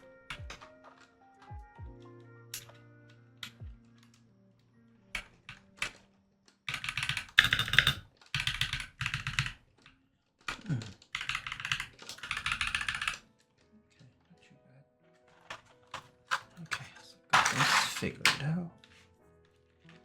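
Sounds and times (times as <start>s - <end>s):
mechanical keyboard typing: 0.0s - 2.7s, 5.1s - 13.4s.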